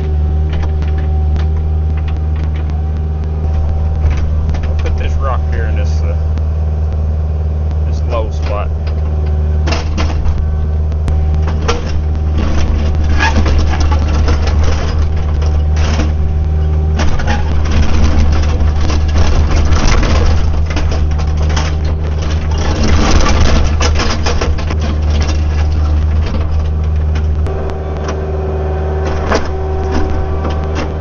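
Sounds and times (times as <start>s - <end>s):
excavator diesel engine running: 0.0s - 31.0s
bucket scraping rock and dirt: 11.4s - 27.5s.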